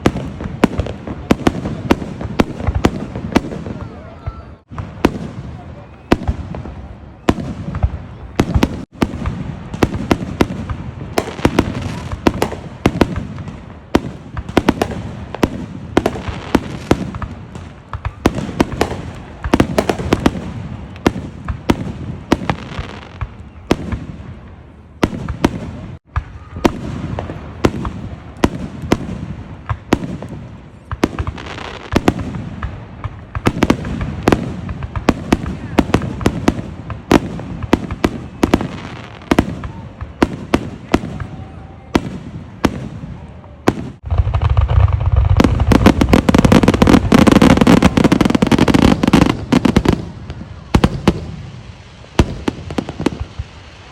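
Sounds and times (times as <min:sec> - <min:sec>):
fireworks bangs and crackles: 0:00.0 - 0:53.9
rumble of explosions: 0:39.3 - 0:51.5.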